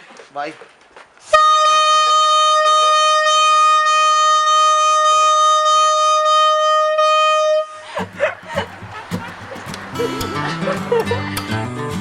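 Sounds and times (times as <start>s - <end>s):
compressed-air horn blast: 1.3s - 7.9s.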